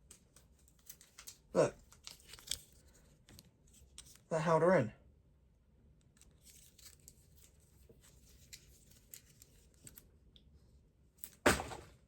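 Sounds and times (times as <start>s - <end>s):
packaging rustling and clicking: 0.0s - 4.2s
loud thud: 11.4s - 12.0s.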